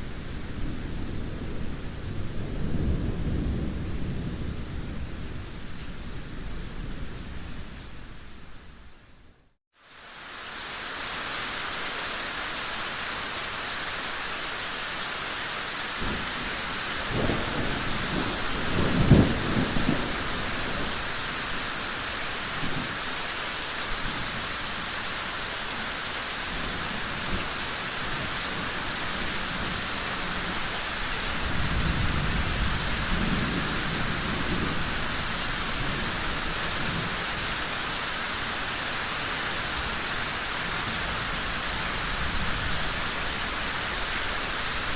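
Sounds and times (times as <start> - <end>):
thunder rumbling: 0.0 - 8.4, 16.0 - 21.6
rain downpour hissing: 0.0 - 44.9.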